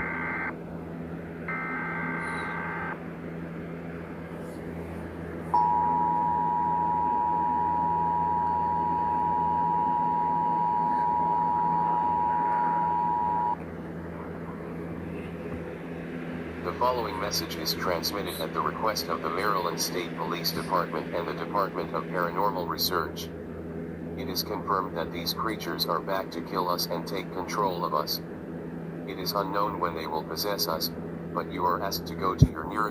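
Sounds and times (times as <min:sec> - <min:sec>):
buzzy digital header data: 0:00.0 - 0:00.6, 0:01.5 - 0:03.0, 0:05.6 - 0:13.6
low hum: 0:00.0 - 0:32.9
two-note attention signal: 0:05.6 - 0:13.6.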